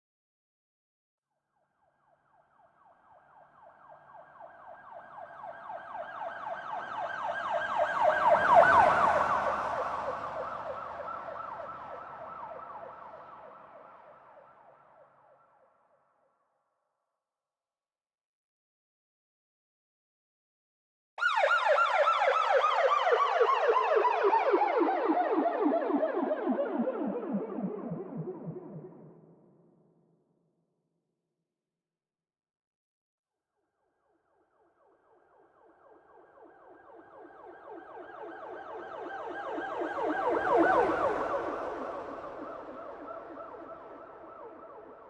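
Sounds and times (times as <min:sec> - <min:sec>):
police siren yelping: 0:21.2 - 0:29.1, 0:37.2 - 0:45.0.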